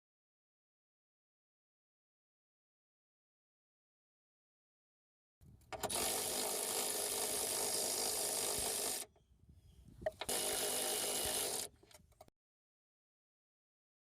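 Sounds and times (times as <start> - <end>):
cordless impact wrench: 5.6 - 9.2, 10.0 - 12.3.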